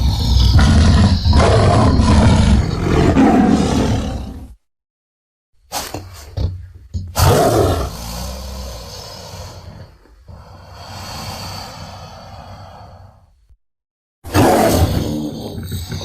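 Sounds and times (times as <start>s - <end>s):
loud creature call: 0.0s - 4.5s
dinosaur grunts: 0.0s - 4.6s, 7.2s - 10.8s, 14.3s - 16.0s
long dinosaur roar: 0.0s - 4.6s, 7.2s - 13.1s.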